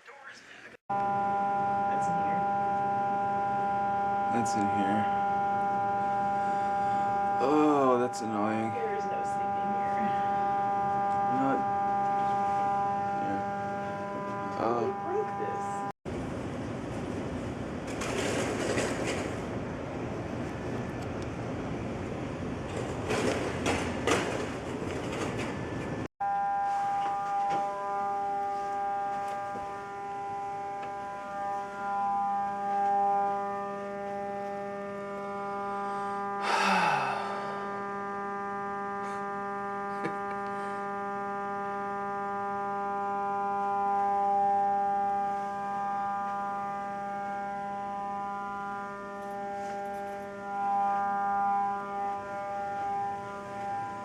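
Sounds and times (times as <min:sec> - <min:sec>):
fire alarm tone: 0:00.9 - 0:15.9, 0:22.7 - 0:54.0.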